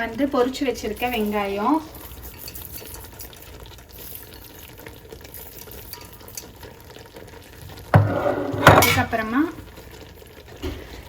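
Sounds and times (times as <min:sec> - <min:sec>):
onions scraping over rice: 0:08.0 - 0:09.0.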